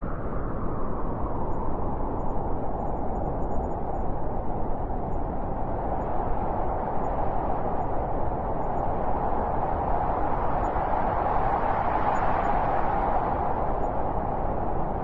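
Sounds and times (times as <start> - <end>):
wind blowing: 0.0 - 15.0.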